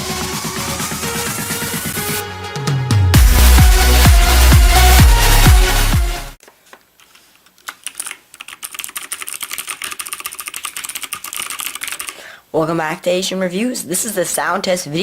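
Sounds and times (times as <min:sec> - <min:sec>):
electronic dance music: 0:00.0 - 0:06.4
mechanical keyboard typing: 0:07.6 - 0:12.2.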